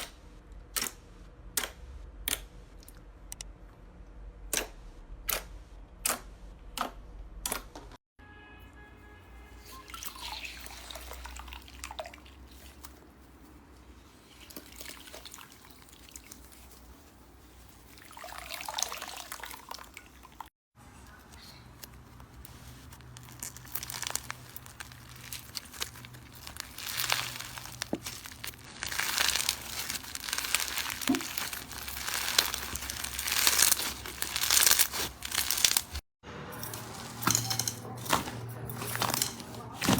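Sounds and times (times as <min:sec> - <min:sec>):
slime crackling and squishing: 0:09.6 - 0:18.6, 0:21.1 - 0:36.0.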